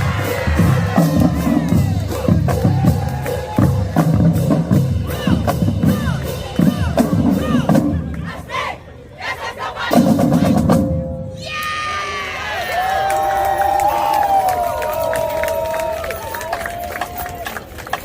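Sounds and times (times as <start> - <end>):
crowd shouting: 0.0 - 3.9
bass drums: 0.0 - 8.1
marching band playing: 0.0 - 11.4.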